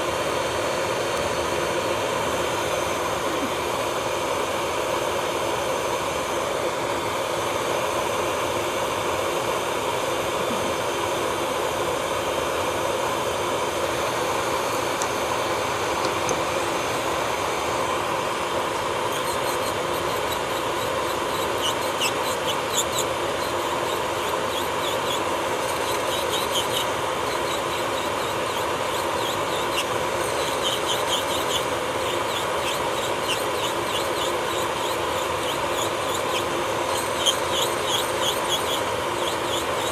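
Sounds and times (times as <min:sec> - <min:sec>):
electric nail drill grinding: 0:00.0 - 0:39.9
short high squeaks: 0:19.0 - 0:39.9.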